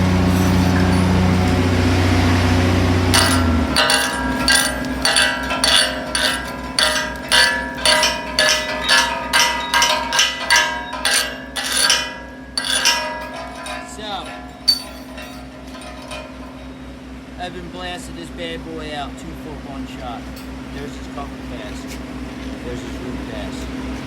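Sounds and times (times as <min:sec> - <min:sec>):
hammer ringing on steel plate: 0:00.0 - 0:02.3, 0:03.0 - 0:16.8.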